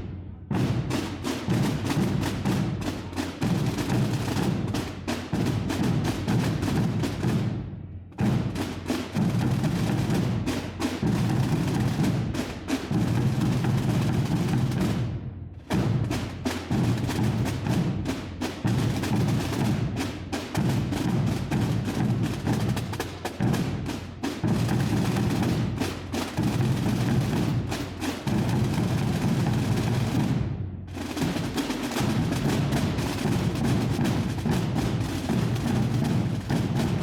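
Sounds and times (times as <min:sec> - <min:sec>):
massed drums rolling: 0:20.6 - 0:37.0.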